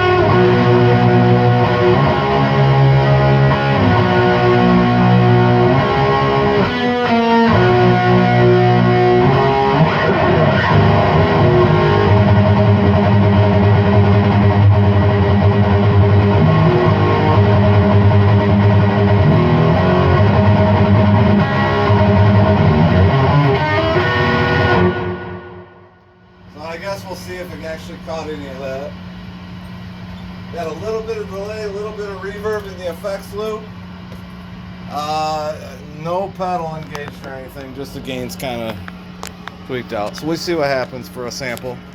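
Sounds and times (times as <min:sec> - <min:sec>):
distorted electric guitar: 0:00.0 - 0:25.9.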